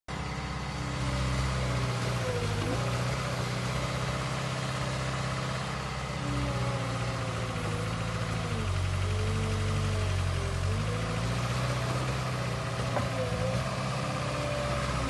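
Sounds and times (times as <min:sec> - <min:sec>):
excavator diesel engine running: 0:00.1 - 0:15.0.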